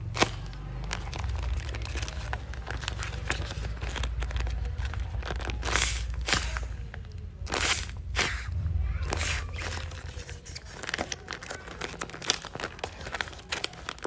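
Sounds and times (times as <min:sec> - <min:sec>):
paper and tape crinkling: 0:00.0 - 0:14.0.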